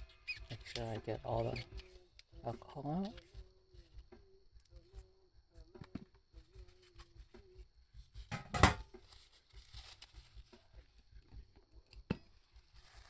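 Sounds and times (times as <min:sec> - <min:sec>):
paper towel rustling and scraping: 0:08.1 - 0:10.8, 0:12.6 - 0:13.0.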